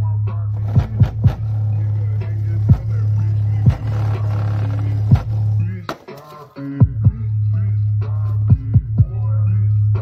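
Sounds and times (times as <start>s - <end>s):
deep bass through subwoofer: 0.0s - 5.8s, 6.8s - 10.0s
kick drum hits: 8.5s - 9.1s.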